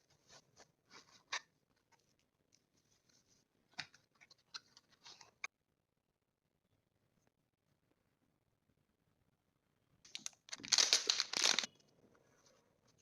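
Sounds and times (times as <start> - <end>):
packaging taps clicks and rustles: 10.1 - 11.7.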